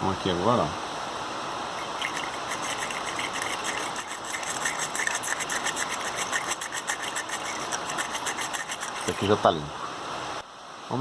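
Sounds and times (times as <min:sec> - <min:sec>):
brush scraping battery terminal: 0:01.8 - 0:09.4.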